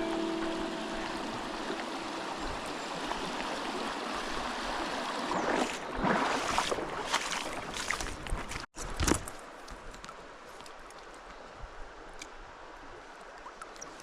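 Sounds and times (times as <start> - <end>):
creek water rushing and gurgling: 0.0 - 14.0
splashing or rustling: 1.9 - 9.4.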